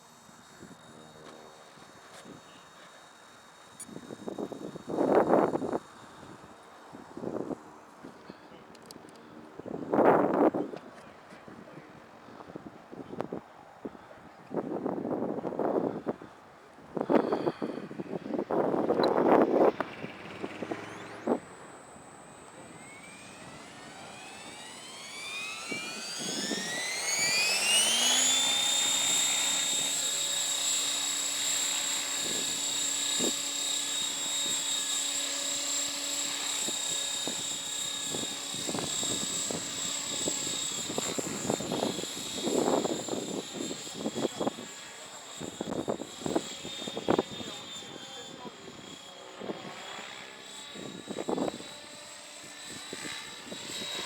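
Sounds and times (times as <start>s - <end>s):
rc helicopter motor and rotor whine: 0.0s - 54.0s
wind gusts on microphone: 14.1s - 21.6s.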